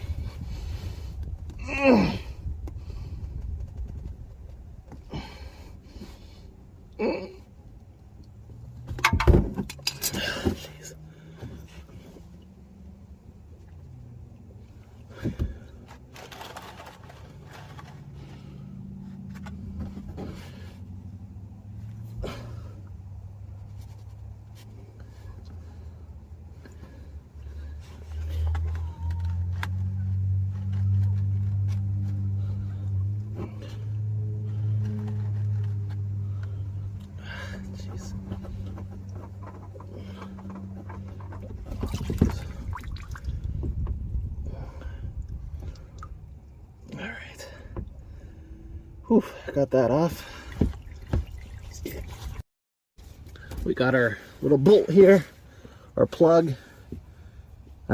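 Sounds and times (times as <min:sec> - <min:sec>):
low steady hum: 0:00.0 - 0:52.4
oil pouring into bucket: 0:50.2 - 0:52.3.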